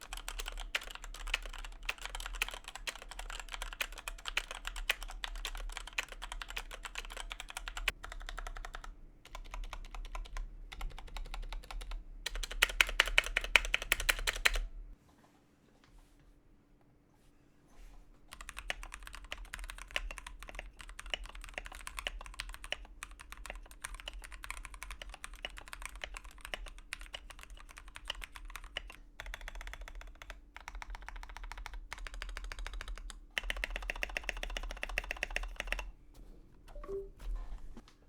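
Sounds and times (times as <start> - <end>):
mechanical keyboard typing: 0.0 - 14.7, 18.3 - 35.9.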